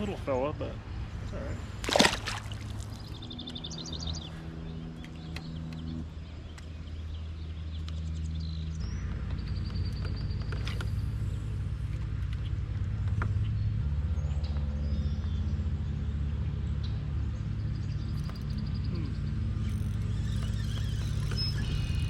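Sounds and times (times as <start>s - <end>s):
low engine drone: 0.0s - 22.0s.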